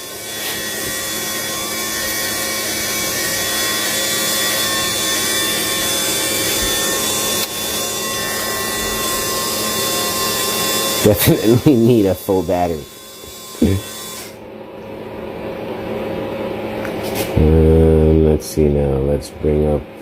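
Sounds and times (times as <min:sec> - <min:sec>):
electric winch motor whirring: 0:00.0 - 0:14.4.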